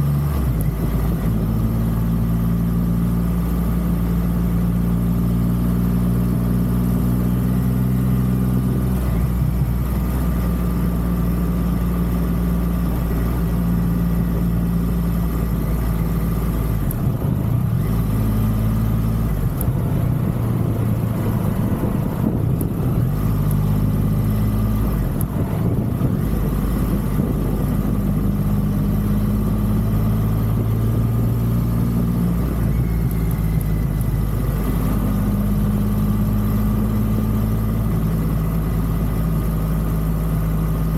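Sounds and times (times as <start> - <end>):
motorcycle engine running: 0.0 - 40.9
wind noise rumble: 19.2 - 35.7.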